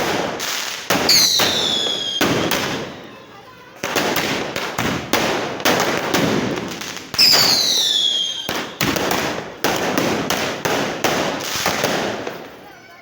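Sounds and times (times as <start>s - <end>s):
fireworks bangs and crackles: 0.0s - 13.0s
whistling firework shriek: 1.1s - 3.3s, 7.1s - 8.9s.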